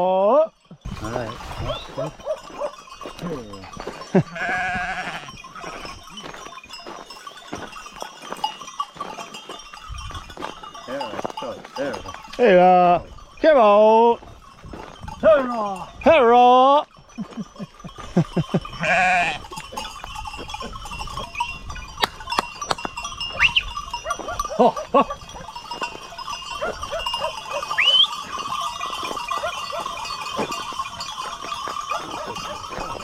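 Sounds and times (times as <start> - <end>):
sheep bells clanking: 0.0 - 33.0
sheep bleating: 4.2 - 5.4, 18.8 - 19.4.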